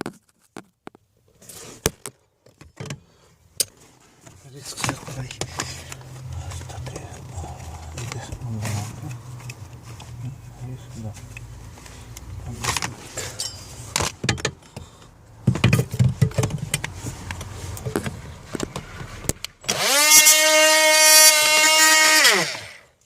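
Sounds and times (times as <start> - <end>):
rotary cutting tool whining: 19.7 - 23.0.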